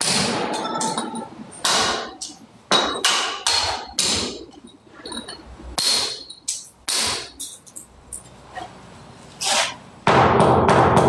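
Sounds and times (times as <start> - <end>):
hammer blows ringing: 5.8 - 7.4.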